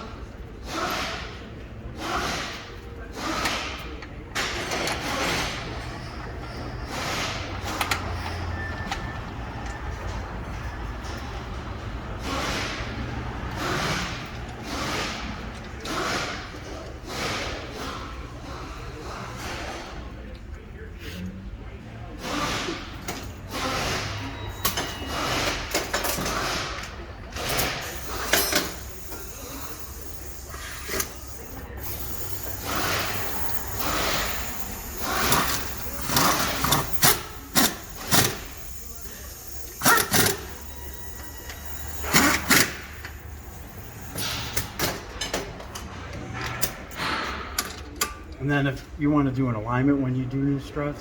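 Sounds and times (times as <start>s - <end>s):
tools and metal parts clinking: 23.0s - 48.3s.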